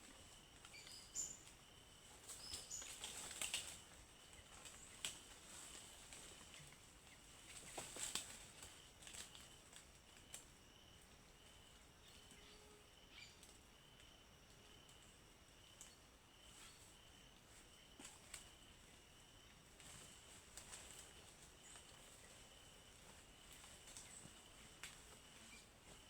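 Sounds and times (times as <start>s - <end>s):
crackles and rustles: 0.6s - 10.5s, 17.5s - 18.9s, 19.7s - 26.0s.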